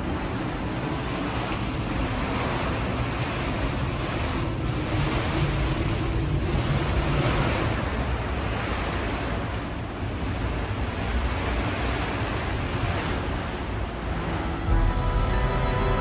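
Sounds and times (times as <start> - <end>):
rough water: 0.0 - 16.0
strong wind buffeting microphone: 0.0 - 16.0.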